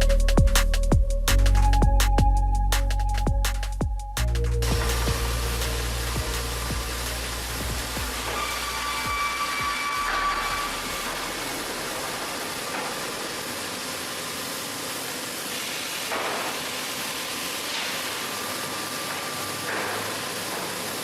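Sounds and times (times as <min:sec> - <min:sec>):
machinery noise: 0:02.8 - 0:21.0
hiss: 0:04.2 - 0:21.0.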